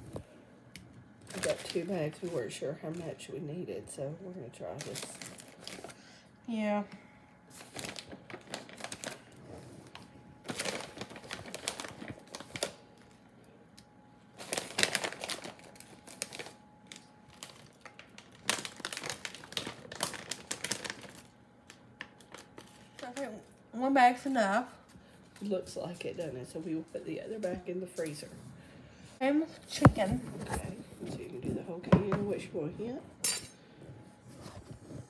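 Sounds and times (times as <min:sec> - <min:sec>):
plastic bag crinkling: 0:01.2 - 0:03.2, 0:04.6 - 0:06.1, 0:07.5 - 0:13.2, 0:14.3 - 0:23.4.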